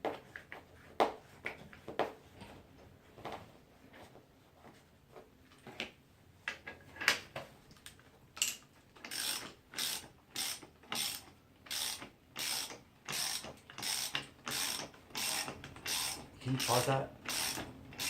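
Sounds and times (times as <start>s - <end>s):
tools being handled: 7.8s - 9.9s
ratchet wrench clicking: 8.4s - 18.0s.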